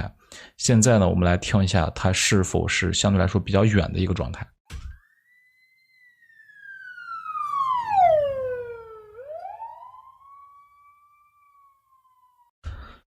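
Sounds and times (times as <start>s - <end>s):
police siren wail: 5.0s - 12.5s.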